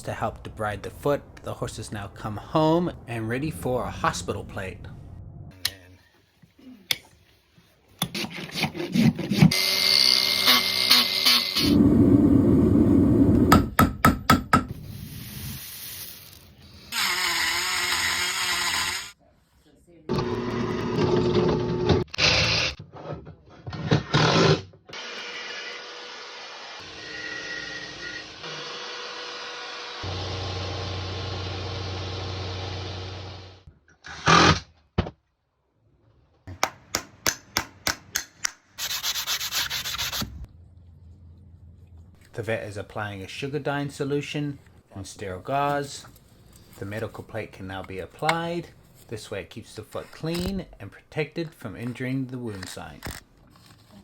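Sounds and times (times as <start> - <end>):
rasp strokes on hoof: 8.0 - 9.6
power tool whirring: 9.5 - 13.5, 16.9 - 19.2, 20.1 - 22.8, 24.1 - 34.6.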